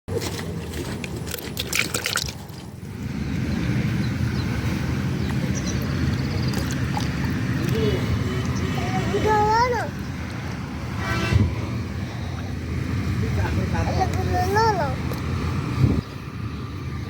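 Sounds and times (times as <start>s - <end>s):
water splashing and trickling: 0.1s - 11.0s.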